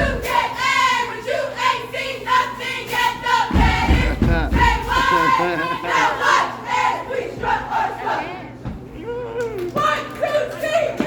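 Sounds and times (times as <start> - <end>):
cheerleaders chanting in unison: 0.0 - 9.0, 9.7 - 11.0
heavy low thuds: 3.5 - 5.4.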